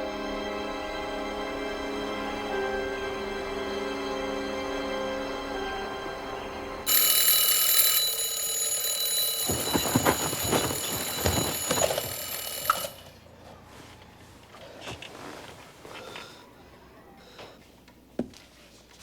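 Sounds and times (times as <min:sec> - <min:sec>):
electric bell ringing: 0:05.5 - 0:13.2
knocks and clatters: 0:06.9 - 0:13.1.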